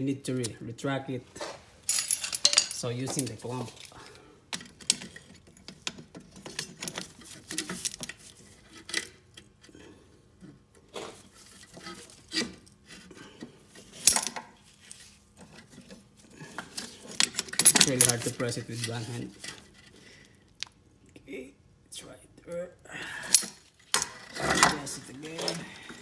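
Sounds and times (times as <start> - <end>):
metal clinking and knocking: 1.9 - 4.0, 16.8 - 18.5, 23.4 - 26.0.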